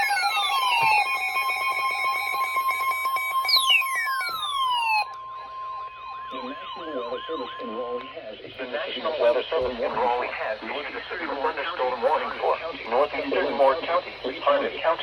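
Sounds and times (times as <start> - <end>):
fast warbling chirps: 0.0 - 9.3
steady alarm tone: 0.0 - 12.5.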